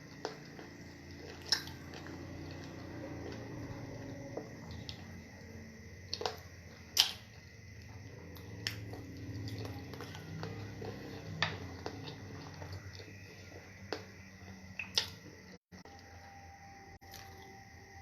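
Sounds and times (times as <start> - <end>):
soft chewing: 0.0 - 16.4
wet smacking clicks: 7.0 - 7.2.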